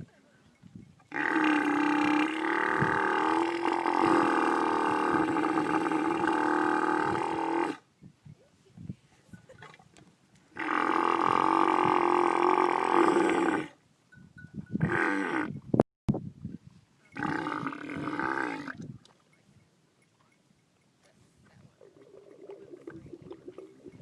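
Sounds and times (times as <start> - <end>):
camel belching calls: 1.0 - 7.8, 10.5 - 13.8, 14.8 - 15.6, 17.1 - 19.0, 21.5 - 24.0.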